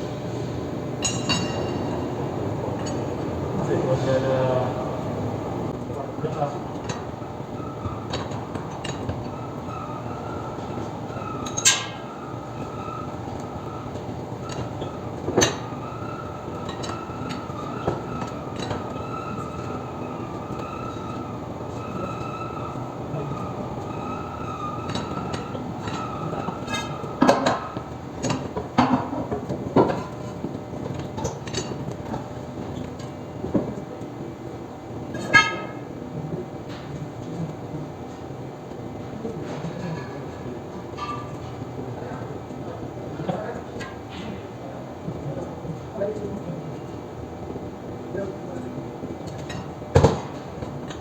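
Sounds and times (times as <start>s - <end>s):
mechanical hum with whine: 0.0s - 51.0s
metal tools clinking and knocking: 1.0s - 1.8s.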